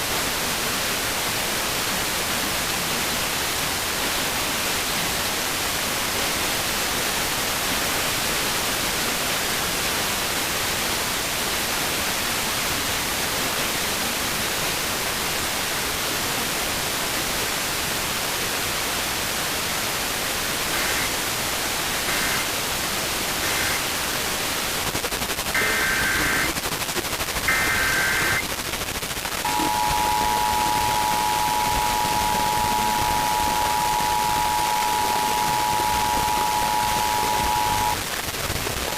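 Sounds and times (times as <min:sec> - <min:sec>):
radio static hiss: 0:20.4 - 0:38.9
screeching digital tone bursts: 0:20.7 - 0:21.1, 0:22.0 - 0:22.5, 0:23.4 - 0:23.8, 0:25.5 - 0:26.6, 0:27.4 - 0:28.5, 0:29.4 - 0:38.0
steady two-tone alert signal: 0:20.7 - 0:21.1, 0:22.0 - 0:22.5, 0:23.4 - 0:23.8, 0:25.6 - 0:26.6, 0:27.4 - 0:28.4, 0:29.4 - 0:38.0.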